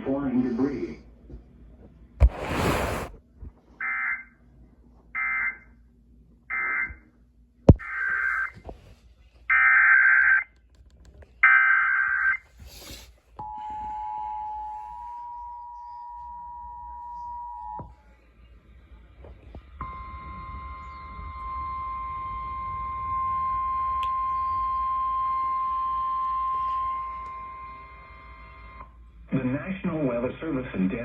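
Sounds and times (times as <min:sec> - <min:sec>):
burst of static: 0:02.2 - 0:03.2.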